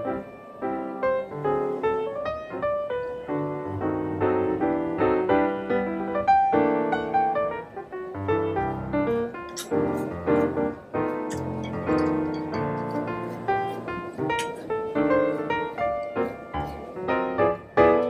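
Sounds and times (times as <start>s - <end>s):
lively piano music: 0.0s - 18.0s.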